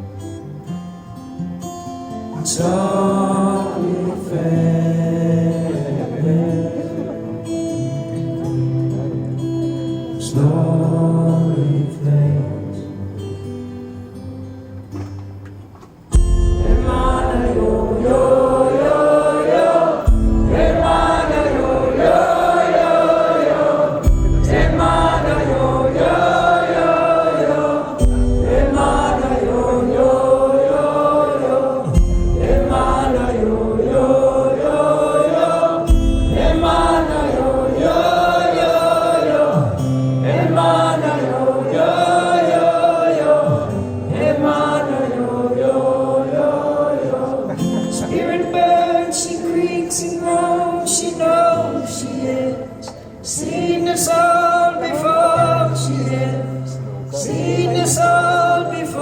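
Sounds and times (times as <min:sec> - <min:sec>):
wordless chant-like singing: 0:02.3 - 0:08.4, 0:16.5 - 0:59.0.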